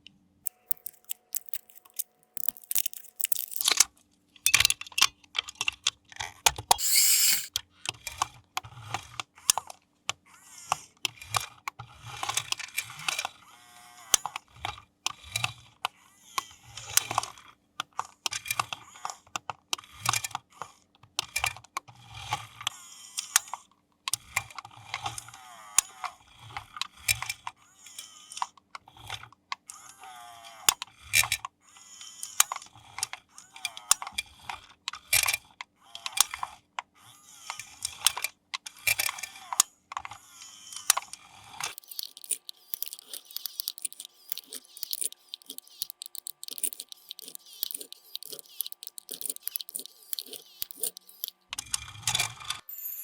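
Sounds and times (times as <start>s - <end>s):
packaging crinkling: 0.5s - 3.8s, 41.7s - 51.3s
plastic gears clattering: 0.5s - 3.8s, 6.8s - 7.5s, 41.6s - 51.4s
plastic toy parts clicking: 0.5s - 3.8s, 6.8s - 7.5s, 41.6s - 51.4s
toy electric motor whining: 6.8s - 7.5s, 40.2s - 41.0s, 41.7s - 53.0s.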